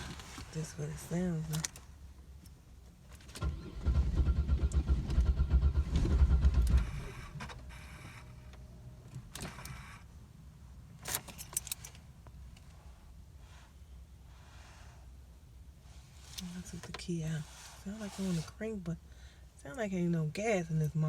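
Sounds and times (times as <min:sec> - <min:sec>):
car engine cranking: 0:03.2 - 0:10.1.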